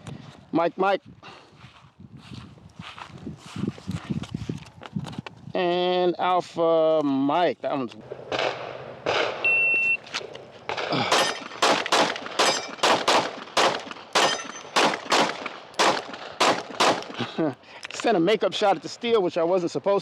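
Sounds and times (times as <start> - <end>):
shot timer beep: 9.4 - 10.0
pistol shots: 10.7 - 17.2
bullets ringing steel target: 11.0 - 17.2.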